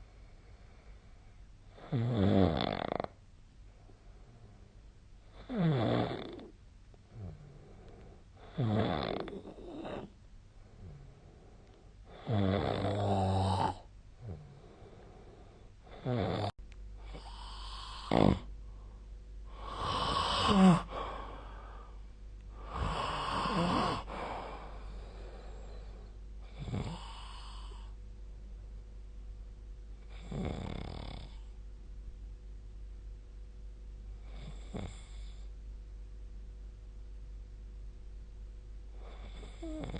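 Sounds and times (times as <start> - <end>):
quiet breathing: 0.0 - 2.1, 2.9 - 5.6, 6.3 - 29.3, 34.1 - 35.7, 38.7 - 39.9
faint steady hum: 0.0 - 39.9
person snoring: 1.7 - 3.2, 5.3 - 6.5, 7.1 - 11.2, 12.1 - 18.5, 19.5 - 28.0, 39.0 - 39.9.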